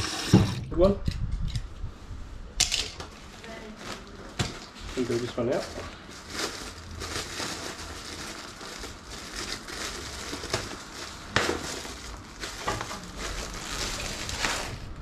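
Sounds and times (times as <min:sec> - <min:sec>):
mesh crinkling and rustling: 0:03.0 - 0:15.0.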